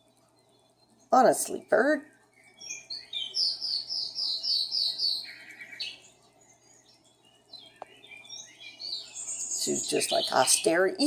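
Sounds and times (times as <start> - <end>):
budgerigar chirping: 2.6 - 6.0.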